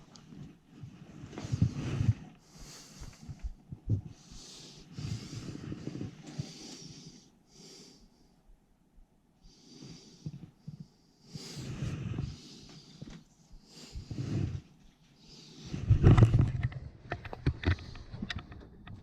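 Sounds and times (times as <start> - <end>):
person breathing hard: 0.8 - 8.4, 9.4 - 16.3.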